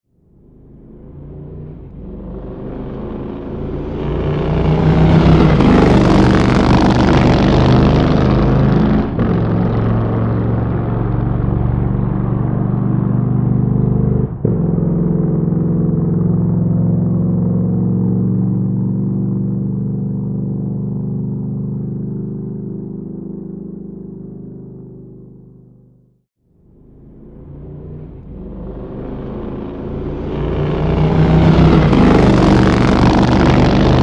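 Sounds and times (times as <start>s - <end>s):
motorcycle engine running: 0.1s - 34.0s.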